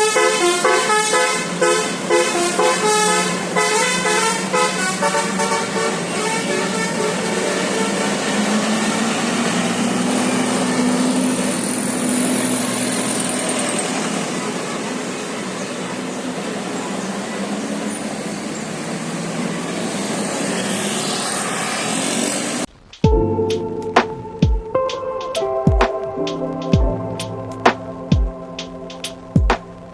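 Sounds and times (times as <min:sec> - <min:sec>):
tyres running on road: 0:00.0 - 0:23.2
road traffic: 0:00.0 - 0:29.9.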